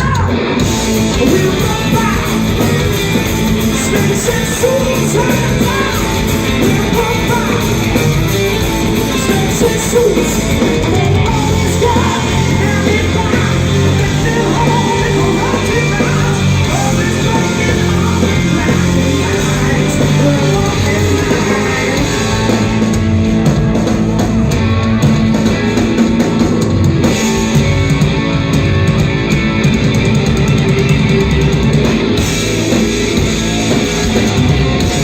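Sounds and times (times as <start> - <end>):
live rock band playing: 0.0 - 35.0
person singing: 1.0 - 23.1.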